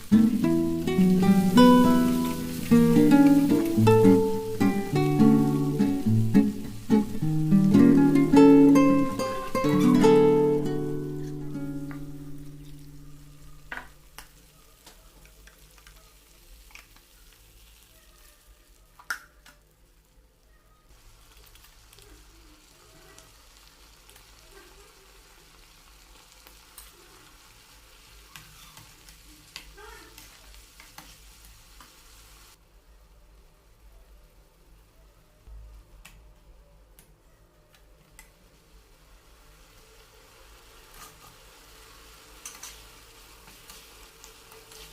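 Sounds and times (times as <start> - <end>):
guitar tune: 0.0 - 14.0
food frying in a pan: 0.0 - 35.0, 38.1 - 44.9.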